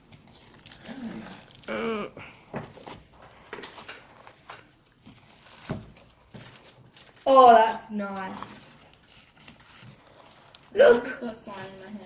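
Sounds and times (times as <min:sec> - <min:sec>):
person's short vocal sound: 0:00.9 - 0:02.3.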